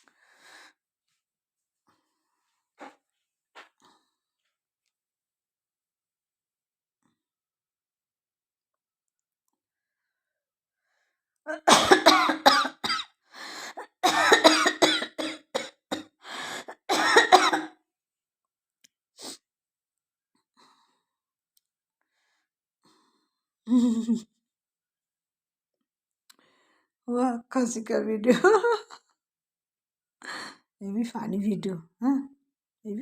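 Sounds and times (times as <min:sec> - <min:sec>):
woman coughing: 0:11.5 - 0:13.1, 0:13.8 - 0:16.1, 0:16.7 - 0:17.7.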